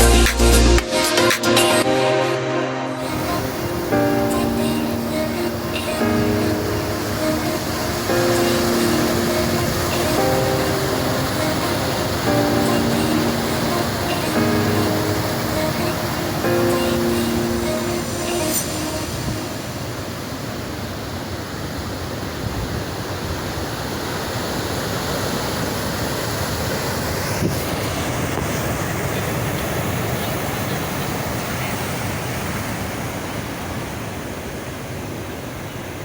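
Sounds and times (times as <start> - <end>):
sea surf washing ashore: 0.0 - 36.0.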